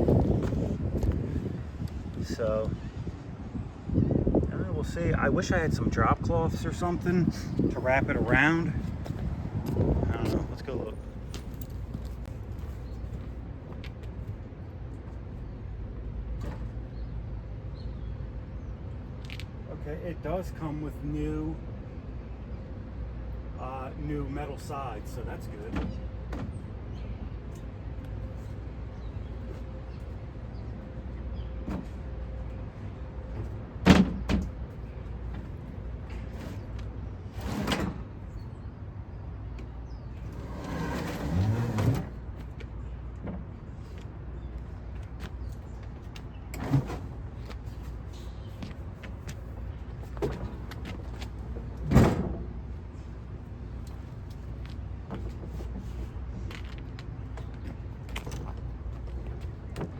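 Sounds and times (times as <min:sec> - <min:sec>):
scraping slide: 0:40.2 - 0:42.2.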